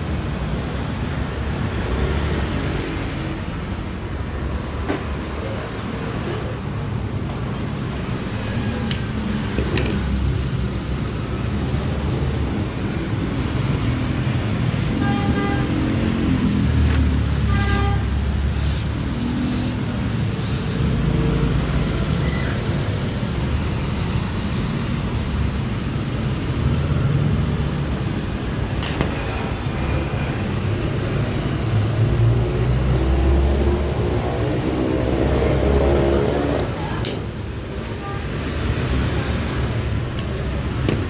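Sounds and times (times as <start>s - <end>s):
road traffic rumble: 0.0s - 41.0s
vehicle horn tooting: 17.4s - 18.2s.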